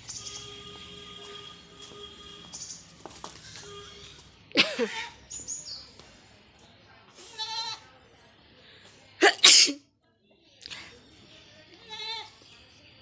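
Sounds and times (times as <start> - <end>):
person sneezing: 9.2 - 9.8.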